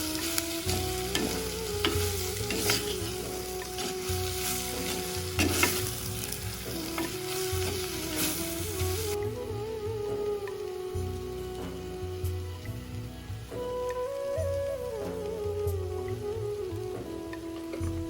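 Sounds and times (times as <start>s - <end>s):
fish sizzling in hot oil: 0.0s - 18.0s
spoon scraping a pan: 0.7s - 9.1s.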